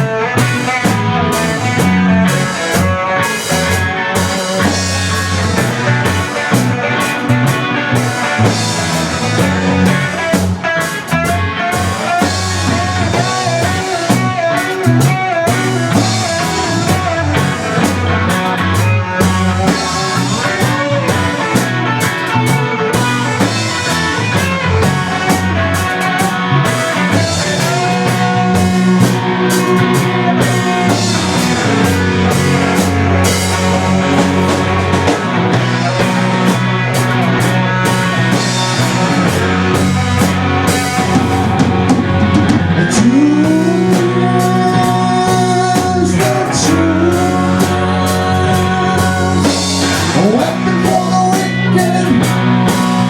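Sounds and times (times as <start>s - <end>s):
electric guitar bending notes: 0.0s - 53.0s
rock band playing: 0.0s - 53.0s.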